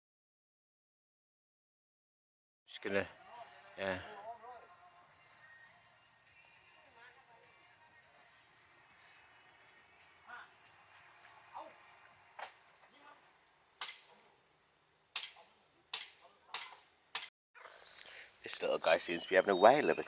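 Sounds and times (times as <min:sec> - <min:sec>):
cricket chirping: 0:02.8 - 0:17.3
sharp clicks: 0:13.8 - 0:14.2, 0:15.1 - 0:17.3.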